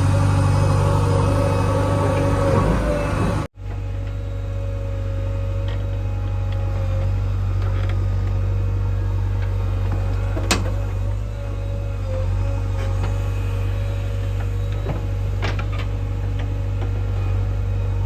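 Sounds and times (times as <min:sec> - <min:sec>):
diesel engine humming: 0:00.0 - 0:04.5.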